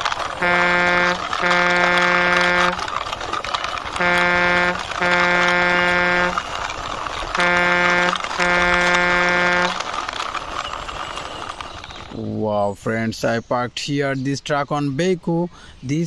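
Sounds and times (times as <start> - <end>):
truck horn honking: 0.3 - 3.0, 3.9 - 6.6, 7.3 - 9.9.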